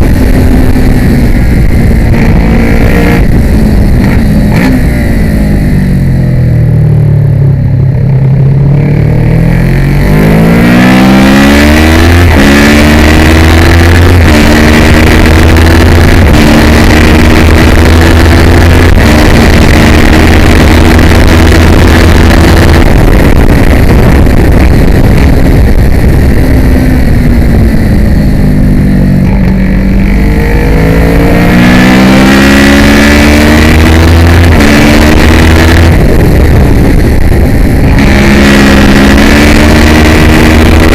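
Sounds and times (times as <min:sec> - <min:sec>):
motorcycle engine at full throttle: 0:00.0 - 0:40.9
wind rushing past: 0:09.8 - 0:40.9.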